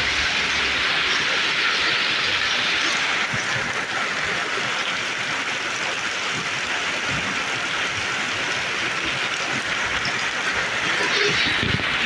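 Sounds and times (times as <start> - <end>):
heavy rain falling: 0.0 - 12.0
raindrops pattering and splashing: 0.0 - 12.0.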